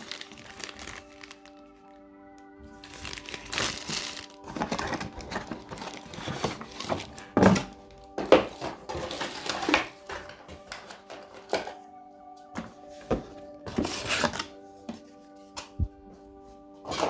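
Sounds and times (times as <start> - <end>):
packaging crinkling and rustling: 0.0 - 11.8
background music: 0.0 - 17.0.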